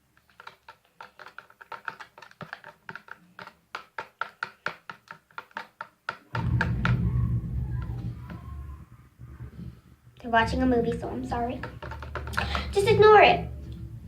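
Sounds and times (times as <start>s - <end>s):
loud low rumble: 6.4s - 11.6s, 13.0s - 14.0s.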